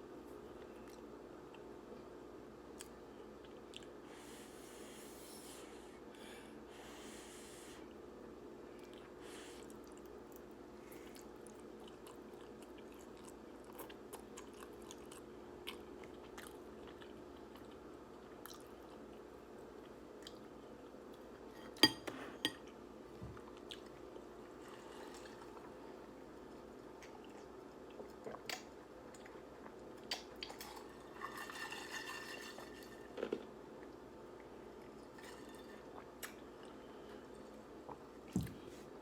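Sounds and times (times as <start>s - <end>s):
person chewing noodles: 8.8s - 21.2s, 23.4s - 24.6s, 26.6s - 30.8s, 35.9s - 38.3s.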